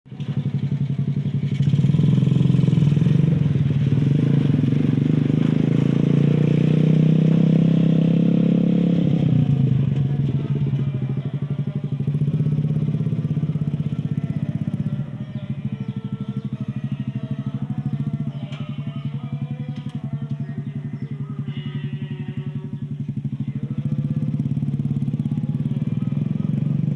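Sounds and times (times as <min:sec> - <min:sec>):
motorcycle engine running: 0:00.1 - 0:26.9.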